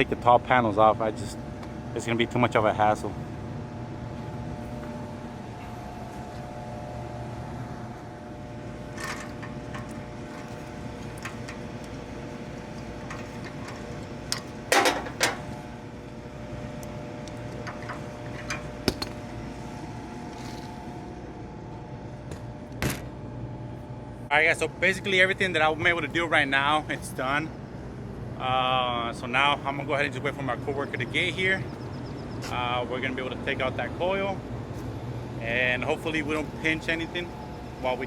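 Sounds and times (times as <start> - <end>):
steady machine hum: 0.0 - 38.0
metallic clanks: 8.9 - 15.6
sharp metallic clicks and knocks: 12.7 - 15.5.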